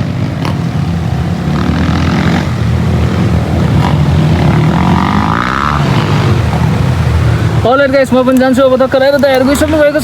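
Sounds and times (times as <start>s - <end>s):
dirt bike engine rumbling: 0.0s - 10.0s.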